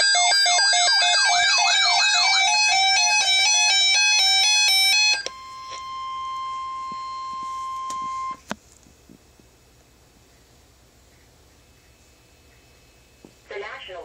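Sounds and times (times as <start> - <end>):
electronic tones hopping in pitch: 0.0 - 8.4
weather radio alert tone: 4.2 - 8.4
faint broadcast hiss: 5.3 - 14.0.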